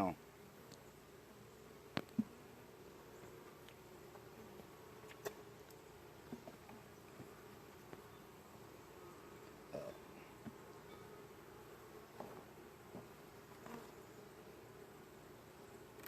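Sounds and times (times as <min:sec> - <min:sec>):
honey bees buzzing: 0:00.0 - 0:16.0
hive frames clicking: 0:01.9 - 0:02.3, 0:05.0 - 0:06.7.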